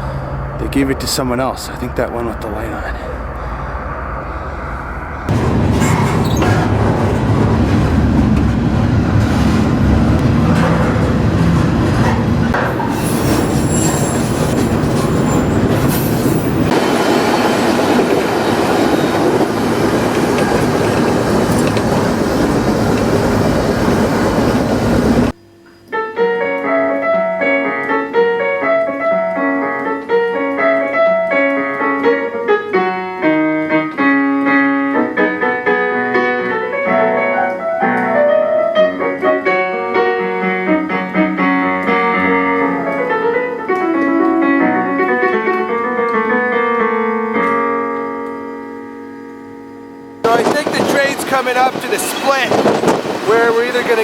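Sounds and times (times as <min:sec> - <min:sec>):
freight train rumbling: 0:00.0 - 0:25.4, 0:50.2 - 0:54.0
solo piano music: 0:25.2 - 0:51.0.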